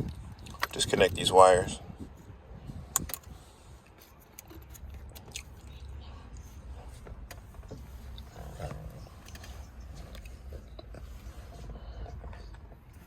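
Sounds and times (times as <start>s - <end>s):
steady low hum: 0.0s - 13.0s
connectors clicking: 2.9s - 3.3s.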